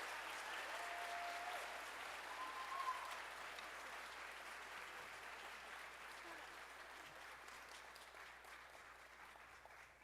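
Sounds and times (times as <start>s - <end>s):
audience applauding: 0.0s - 10.0s
high whoop: 0.7s - 1.7s, 2.3s - 3.2s.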